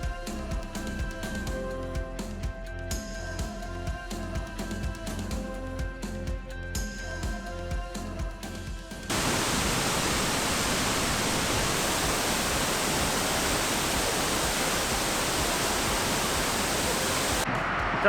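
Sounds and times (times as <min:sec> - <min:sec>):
background music: 0:00.0 - 0:17.5
waterfall rushing: 0:09.1 - 0:17.5
wind on microphone: 0:09.1 - 0:18.0.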